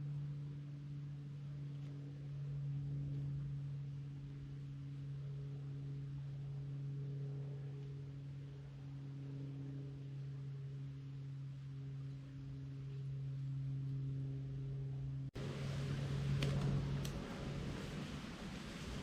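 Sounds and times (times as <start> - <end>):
steady low hum: 0.0 - 19.0.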